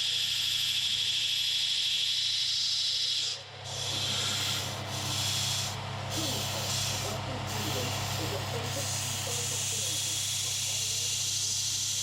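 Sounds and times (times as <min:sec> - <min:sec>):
steel being sanded: 0:02.5 - 0:12.0.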